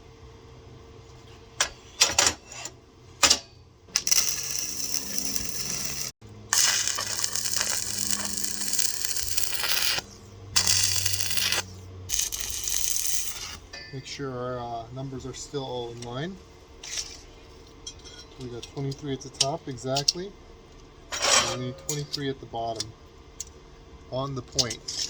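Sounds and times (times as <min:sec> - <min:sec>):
electrode tapping on metal: 0:03.9 - 0:10.0, 0:10.6 - 0:13.6
welding arc crackling: 0:03.9 - 0:13.6.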